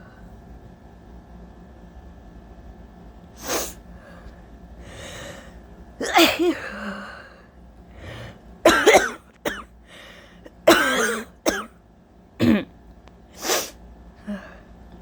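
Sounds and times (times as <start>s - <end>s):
person coughing: 6.0s - 6.8s, 8.7s - 9.7s, 10.7s - 11.7s, 12.4s - 12.7s.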